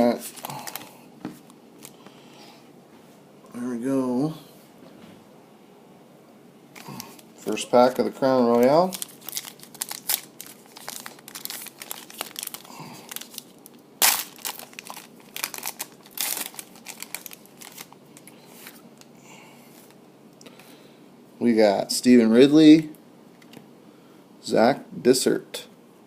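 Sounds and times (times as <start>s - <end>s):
wrapper tearing and crinkling: 0.0s - 0.9s, 8.5s - 18.8s.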